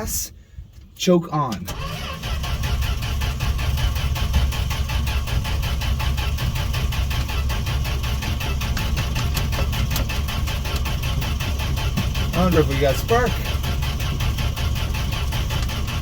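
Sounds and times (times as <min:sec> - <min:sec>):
starter cranking engine: 0:01.6 - 0:16.0.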